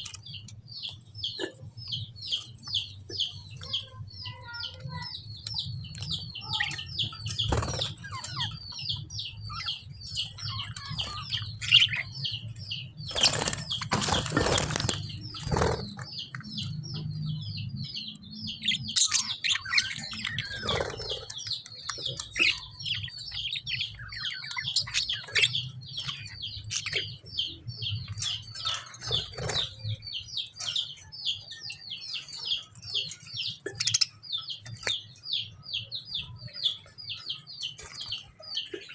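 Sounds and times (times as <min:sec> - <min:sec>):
lovebirds chirping: 0:00.0 - 0:38.9
wing flapping: 0:13.1 - 0:16.0.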